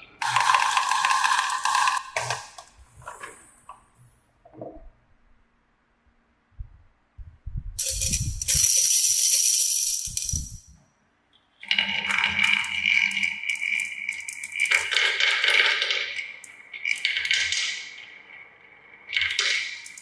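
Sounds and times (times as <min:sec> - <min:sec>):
marbles rattling down plastic track: 0:00.2 - 0:02.6, 0:07.8 - 0:10.6, 0:11.8 - 0:18.0, 0:19.1 - 0:20.0.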